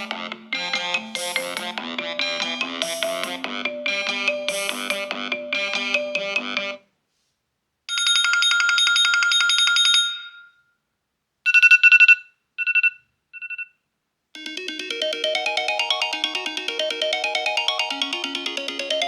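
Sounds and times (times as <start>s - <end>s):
melodic phone ringtone: 0.0s - 6.8s, 14.4s - 19.0s
rapid electronic trill ringtone: 0.0s - 6.8s, 14.4s - 19.0s.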